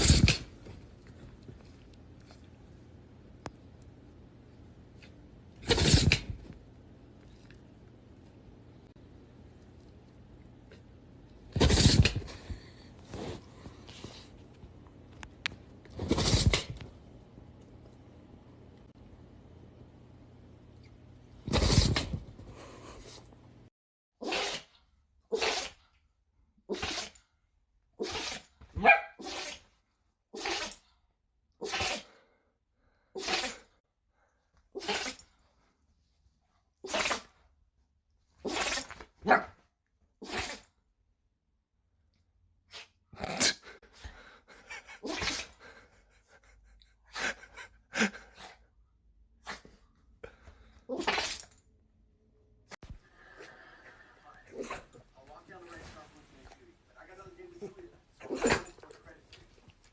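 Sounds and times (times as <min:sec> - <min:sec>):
pet sneezing: 0:00.0 - 0:00.6, 0:05.6 - 0:06.5, 0:11.5 - 0:12.6, 0:16.0 - 0:16.8, 0:21.4 - 0:22.3, 0:24.2 - 0:25.9, 0:26.7 - 0:27.2, 0:28.0 - 0:29.7, 0:30.3 - 0:30.9, 0:31.6 - 0:32.2, 0:33.2 - 0:33.8, 0:34.7 - 0:35.3, 0:36.8 - 0:37.4, 0:38.4 - 0:39.4, 0:40.2 - 0:40.7, 0:42.7 - 0:43.8, 0:44.8 - 0:45.7, 0:49.4 - 0:49.8, 0:50.9 - 0:51.6, 0:54.5 - 0:55.0, 0:57.6 - 0:58.8.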